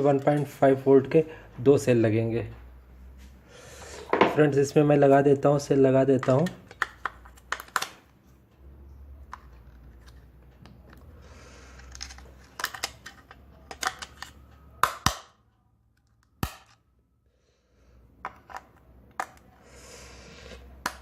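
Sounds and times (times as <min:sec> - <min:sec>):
batteries handled in plastic compartment: 0:11.8 - 0:14.4
sharp plastic snap: 0:14.8 - 0:15.4, 0:16.3 - 0:16.8.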